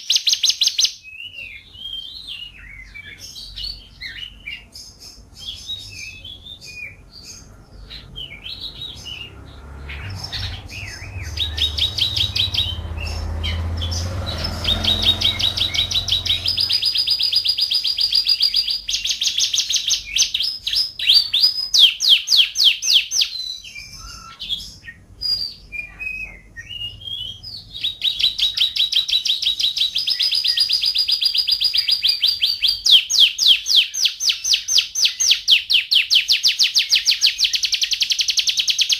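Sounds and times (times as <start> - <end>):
canary singing trills: 0.0 - 38.9
faint low rumble: 6.2 - 17.5.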